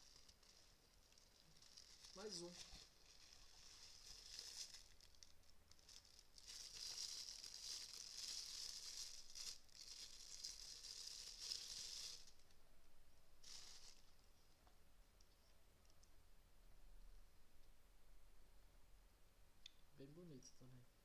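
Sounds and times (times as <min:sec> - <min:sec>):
plastic wrapper crinkling: 0:00.0 - 0:12.6, 0:13.4 - 0:14.2.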